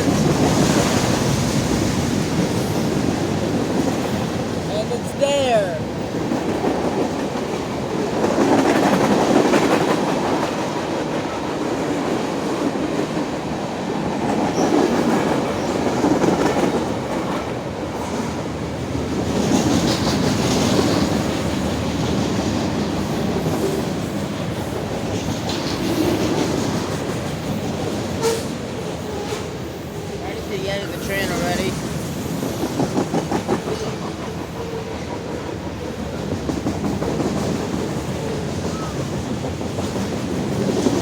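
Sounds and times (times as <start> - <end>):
train wheels rumbling on rail: 0.0 - 41.0.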